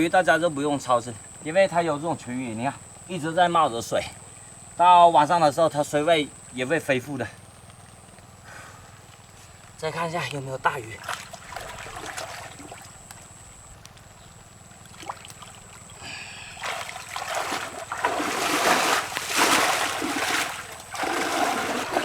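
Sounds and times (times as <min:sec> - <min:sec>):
muddy water splashing: 0:10.8 - 0:13.3, 0:14.7 - 0:22.0.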